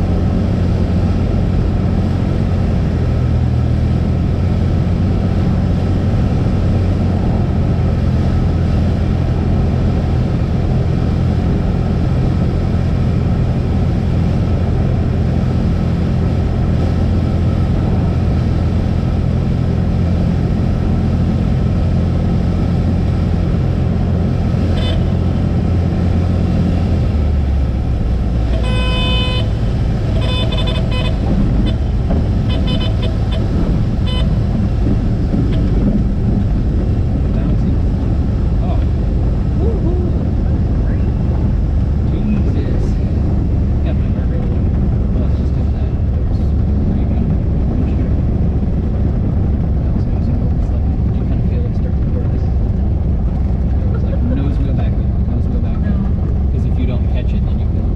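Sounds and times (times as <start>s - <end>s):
stall warning horn: 24.6s - 25.4s, 28.4s - 34.6s.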